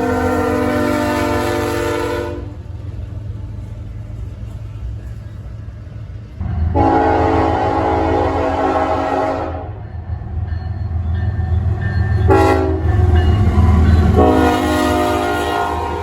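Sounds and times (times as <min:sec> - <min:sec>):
locomotive air horn blasts: 0:00.0 - 0:02.6, 0:06.7 - 0:09.8, 0:12.3 - 0:13.0, 0:14.1 - 0:16.0
train rumbling: 0:00.0 - 0:16.0.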